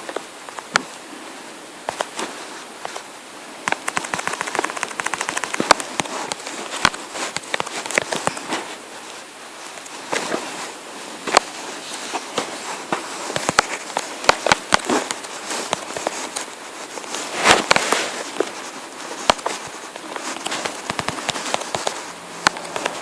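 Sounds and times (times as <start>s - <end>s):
rustling: 0.0s - 23.0s
steady hiss: 0.0s - 23.0s
sharp clicks and crackles: 3.6s - 8.7s, 13.3s - 23.0s.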